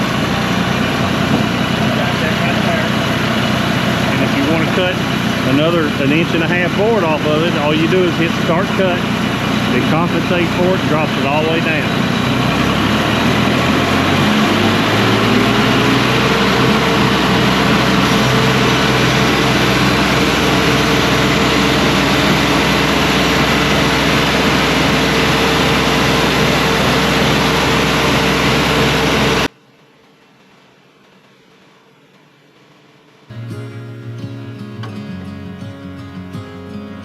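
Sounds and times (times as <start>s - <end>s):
band sawmill running: 0.0s - 29.5s
low hum: 0.0s - 29.5s.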